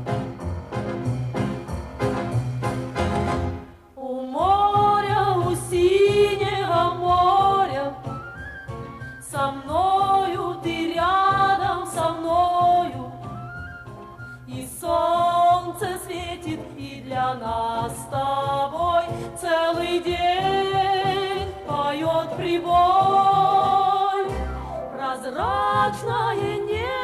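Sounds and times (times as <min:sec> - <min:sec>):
band accompaniment: 0:00.0 - 0:03.9
wordless singing: 0:04.0 - 0:08.2, 0:09.2 - 0:13.3, 0:14.5 - 0:27.0.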